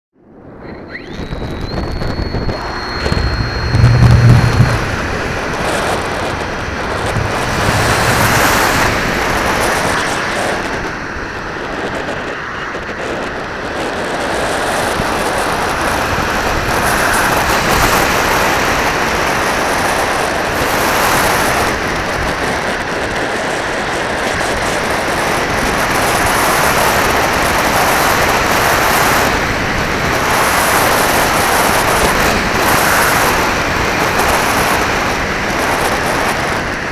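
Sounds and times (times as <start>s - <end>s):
wind buffeting microphone: 0.4s - 36.9s
low bumps: 2.0s - 11.0s.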